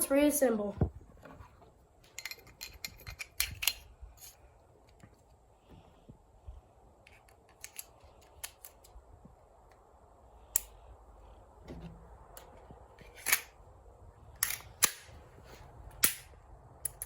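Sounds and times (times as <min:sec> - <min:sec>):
pistol parts clicking together: 0:02.1 - 0:05.0, 0:07.0 - 0:09.0, 0:10.5 - 0:10.8, 0:12.4 - 0:13.6, 0:14.4 - 0:15.1, 0:16.0 - 0:17.0.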